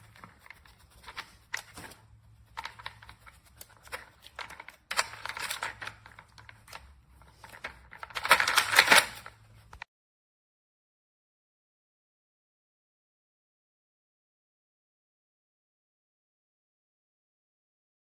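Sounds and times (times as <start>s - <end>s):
plastic toy clicking and clattering: 0.1s - 9.5s.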